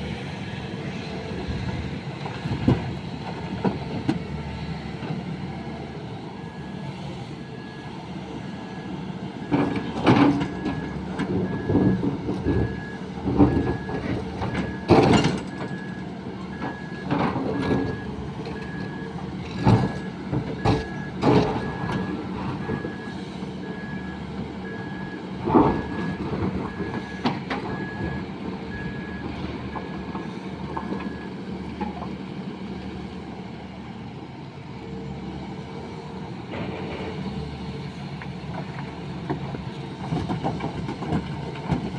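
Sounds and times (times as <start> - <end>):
excavator diesel engine running: 0.0 - 41.9
loud metal clanks and thuds: 36.5 - 38.8.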